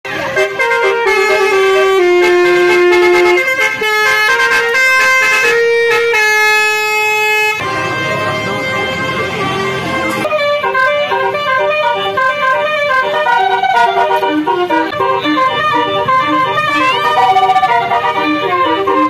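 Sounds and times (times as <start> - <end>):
multi-tone horn playing a tune: 0.1 - 19.0
music: 7.6 - 19.0.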